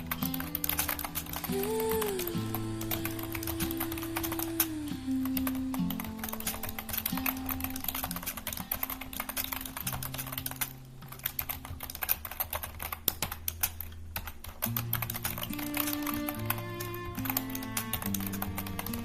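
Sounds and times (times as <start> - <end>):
soft instrumental music: 0.0 - 9.0, 15.4 - 19.0
rapid keyboard typing: 0.0 - 19.0.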